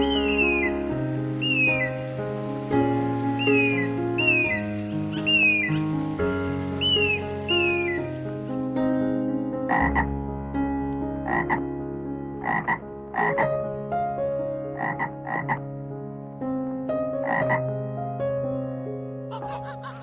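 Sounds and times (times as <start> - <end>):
frog croaking: 0.0 - 0.8, 1.4 - 2.0, 3.4 - 5.9, 6.8 - 8.1, 9.7 - 10.1, 11.3 - 11.7, 12.4 - 13.5, 14.8 - 15.7, 17.2 - 17.6
background music with held notes: 0.0 - 20.0.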